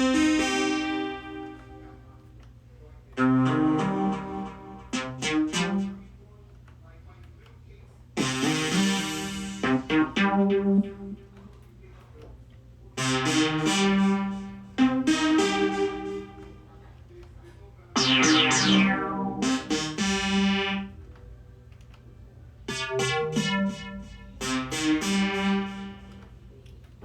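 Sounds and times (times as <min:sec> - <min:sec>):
synthesizer keytar phrases: 0:00.0 - 0:02.1, 0:03.2 - 0:06.2, 0:08.2 - 0:11.4, 0:13.0 - 0:16.7, 0:18.0 - 0:21.0, 0:22.6 - 0:26.5
synth sweep sliding downward: 0:18.0 - 0:20.9, 0:22.7 - 0:26.2.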